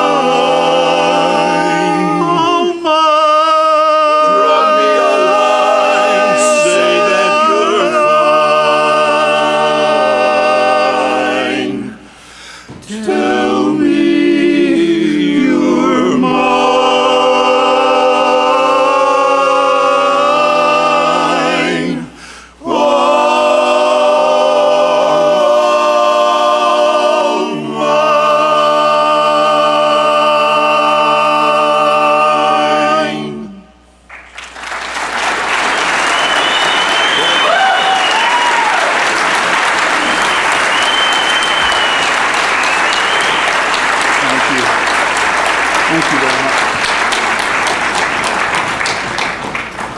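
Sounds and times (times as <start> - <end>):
quartet singing a cappella: 0.0 - 33.9, 36.1 - 47.1
applause: 34.1 - 49.9.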